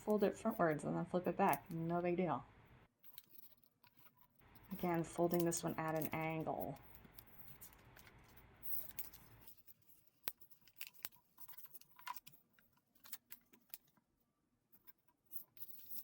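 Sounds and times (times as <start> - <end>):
paper crinkling being folded: 3.0 - 14.0.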